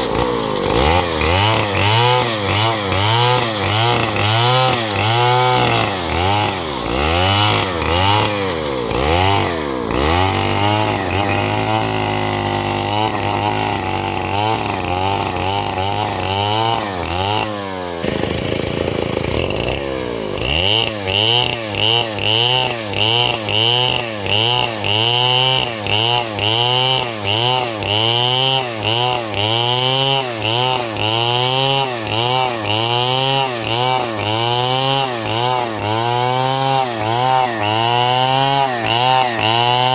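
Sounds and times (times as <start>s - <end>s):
chainsaw engine revving: 0.0s - 39.9s.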